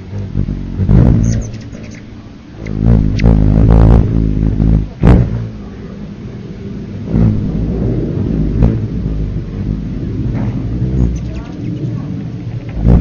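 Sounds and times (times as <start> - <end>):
hummingbird wings humming: 0.0 - 13.0.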